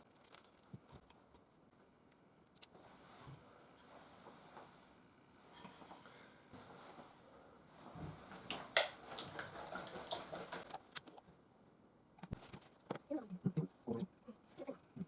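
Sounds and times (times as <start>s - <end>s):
young child's wordless voice: 13.0s - 15.0s.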